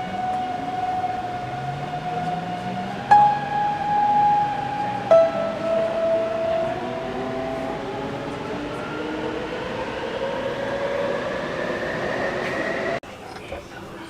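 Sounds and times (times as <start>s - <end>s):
electric train motor whine: 0.0s - 13.0s
train rumble and rolling noise: 0.0s - 14.0s.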